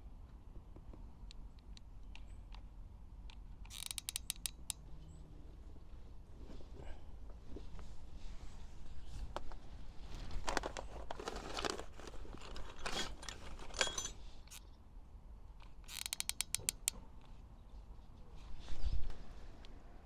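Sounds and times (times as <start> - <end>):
sharp clicks: 1.2 - 4.8, 15.6 - 17.4
scraping and rustling: 10.0 - 14.2.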